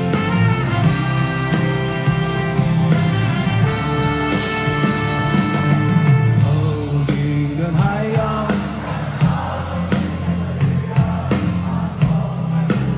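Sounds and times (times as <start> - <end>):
bass line: 0.0 - 12.9
person singing: 6.0 - 12.9.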